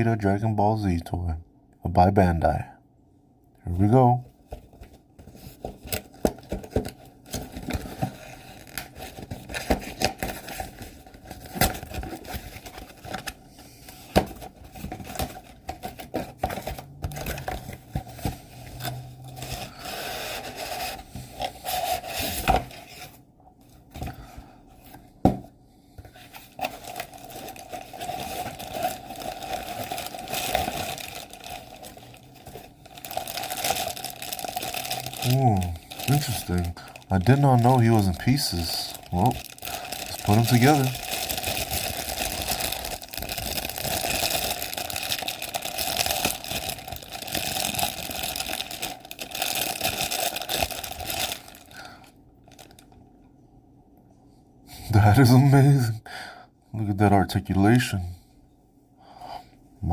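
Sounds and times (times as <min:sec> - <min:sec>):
cardboard and plastic packaging opened: 0:04.5 - 0:23.2, 0:26.1 - 0:53.0.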